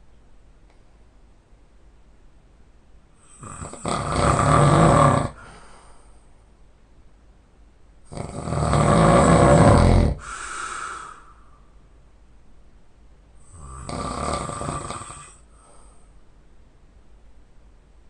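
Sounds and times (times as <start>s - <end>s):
man snoring loudly: 3.2s - 5.4s, 8.1s - 11.1s, 13.4s - 15.4s.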